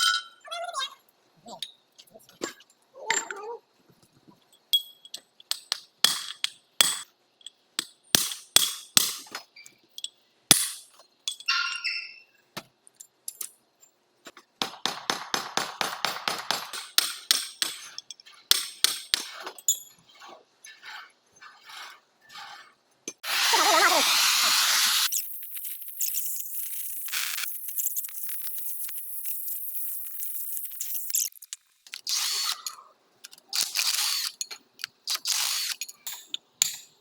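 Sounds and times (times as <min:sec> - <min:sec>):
metal tools clinking and knocking: 0:01.6 - 0:03.5, 0:04.4 - 0:08.1, 0:09.2 - 0:12.3, 0:12.9 - 0:14.4, 0:16.2 - 0:23.2, 0:35.7 - 0:37.0.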